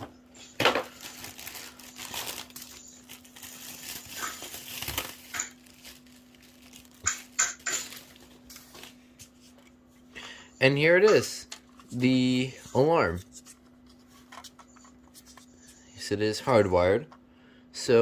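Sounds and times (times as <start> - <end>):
crinkling plastic and cardboard: 0.4 - 9.6.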